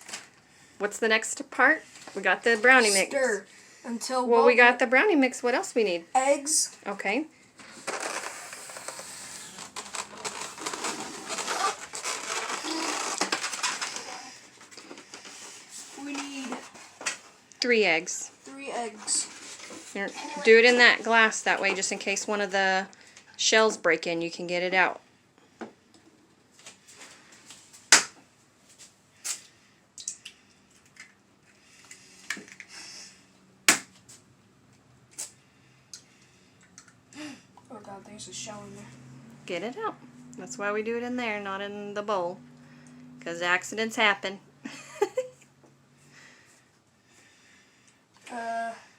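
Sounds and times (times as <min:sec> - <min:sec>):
rustling and scraping: 0:07.6 - 0:17.4, 0:18.6 - 0:22.7.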